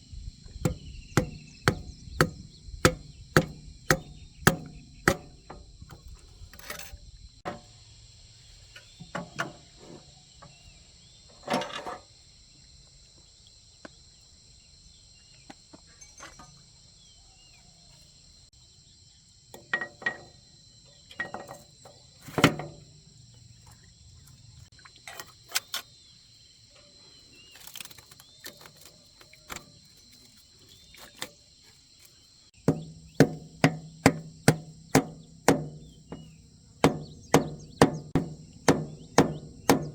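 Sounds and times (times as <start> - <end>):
insects buzzing: 0.0 - 9.0, 20.2 - 39.9
hammer-like strikes: 0.6 - 5.6, 32.7 - 39.9.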